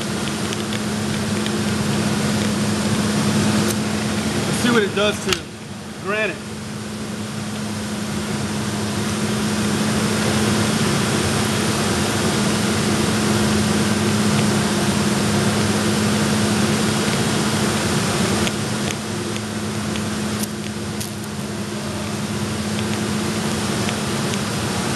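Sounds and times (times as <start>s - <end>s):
sharp ticks: 0.0s - 2.6s
steady low hum: 0.0s - 24.9s
torch flame hissing: 0.0s - 24.9s.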